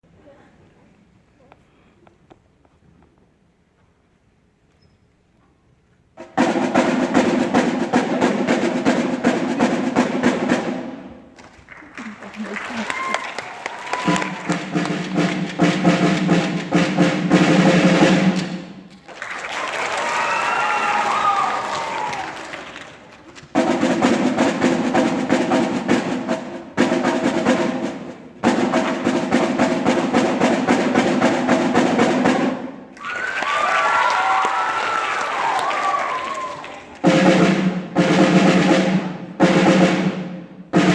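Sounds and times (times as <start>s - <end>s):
fast drum strokes: 6.2s - 11.4s, 12.2s - 19.0s, 20.0s - 32.9s, 35.4s - 40.9s
audience cheering and shouting: 11.9s - 14.8s, 19.4s - 23.0s, 33.0s - 37.0s.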